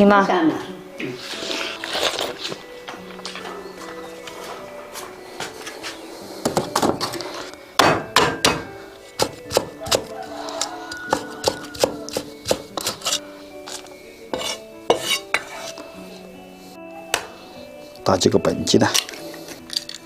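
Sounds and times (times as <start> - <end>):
background music: 0.0 - 20.0
knife chopping on wooden board: 7.8 - 10.2, 11.0 - 13.2.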